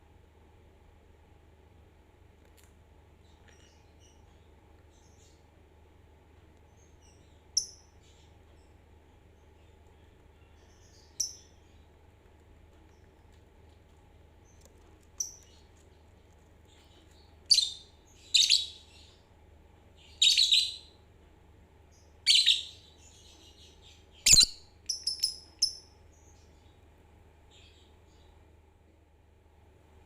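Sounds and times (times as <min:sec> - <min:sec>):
lovebirds chirping: 0:06.7 - 0:12.0, 0:14.4 - 0:19.3, 0:20.0 - 0:21.0, 0:21.9 - 0:26.8.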